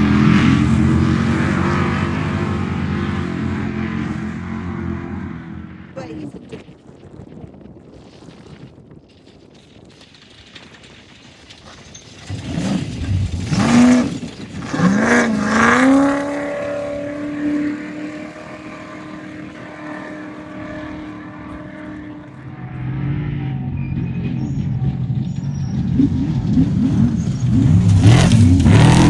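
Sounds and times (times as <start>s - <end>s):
race truck engine revving: 0.0s - 6.0s, 12.3s - 29.0s
deeper engine note: 14.7s - 29.0s.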